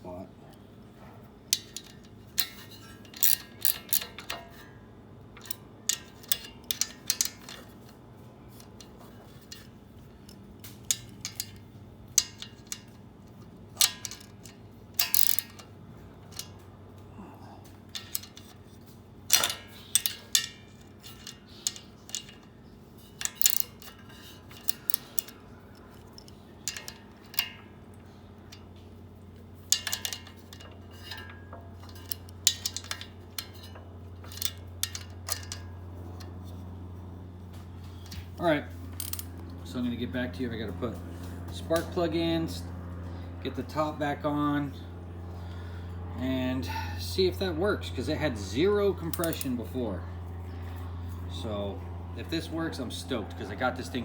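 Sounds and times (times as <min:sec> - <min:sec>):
wrenches clinking on engine parts: 0:01.4 - 0:54.0.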